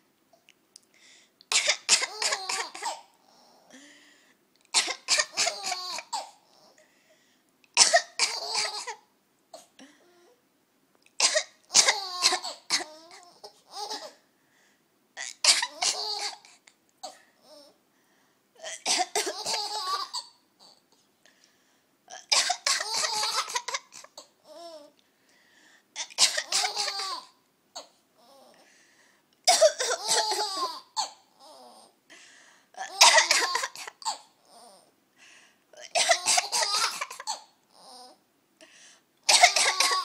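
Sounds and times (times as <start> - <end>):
baby laughing: 19.2 - 20.2, 22.7 - 24.3, 26.0 - 27.3
adult coughing: 22.2 - 24.2, 29.5 - 31.2, 32.9 - 34.3, 35.8 - 37.5, 39.3 - 40.0.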